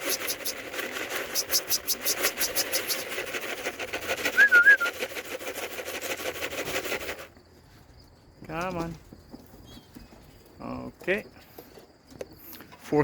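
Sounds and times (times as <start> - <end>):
fast high ticking: 0.0 - 6.9
short warbling whistle: 1.3 - 3.0, 4.3 - 5.0.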